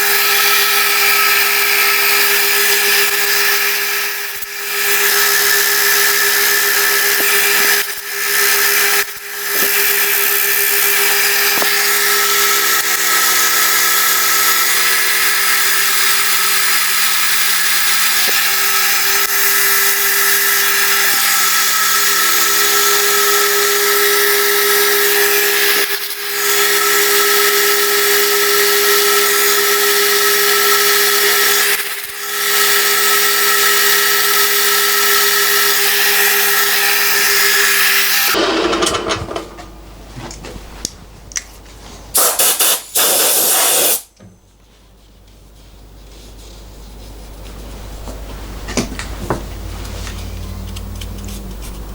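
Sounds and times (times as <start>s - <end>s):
milling machine running: 0.0s - 39.8s.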